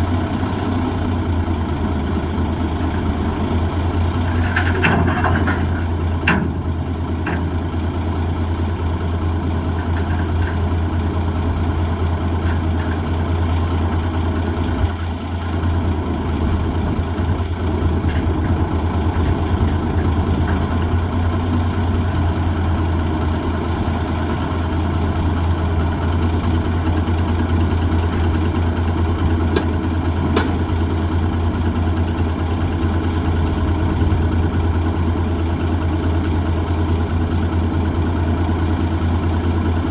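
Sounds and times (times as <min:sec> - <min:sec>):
diesel truck engine running: 0:00.0 - 0:39.9
short knocks: 0:29.3 - 0:31.0.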